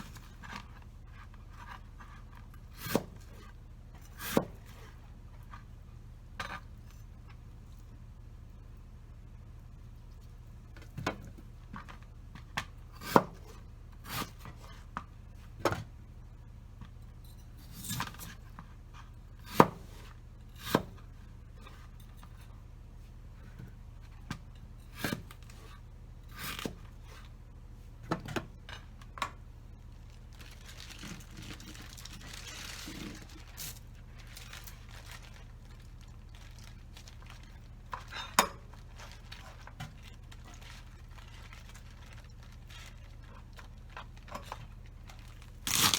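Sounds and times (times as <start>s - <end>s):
soft rustle: 29.9s - 45.9s.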